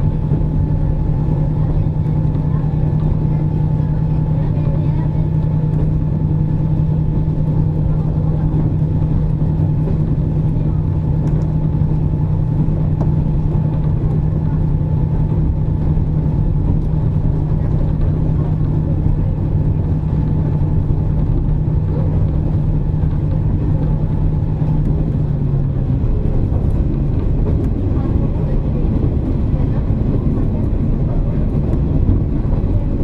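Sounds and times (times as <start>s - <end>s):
diesel engine drone: 0.0s - 33.0s
train running rumble: 0.0s - 33.0s.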